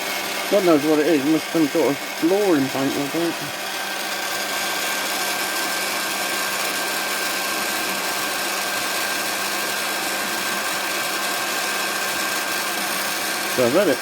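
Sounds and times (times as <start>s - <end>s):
heat gun fan whining: 0.0s - 14.0s.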